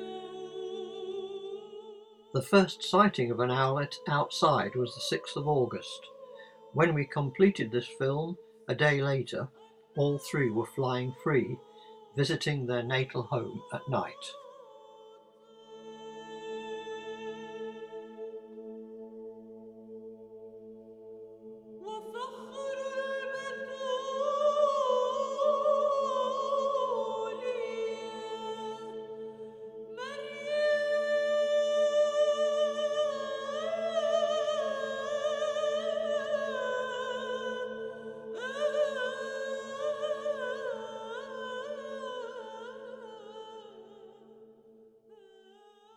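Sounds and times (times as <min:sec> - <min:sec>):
high wordless singing voice: 0:00.0 - 0:18.6.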